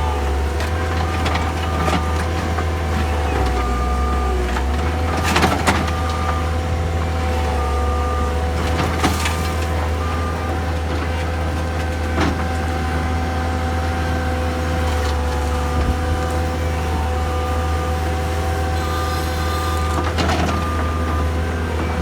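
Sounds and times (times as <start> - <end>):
skid steer loader engine running: 0.0 - 22.0
hydraulic whine: 14.6 - 22.0.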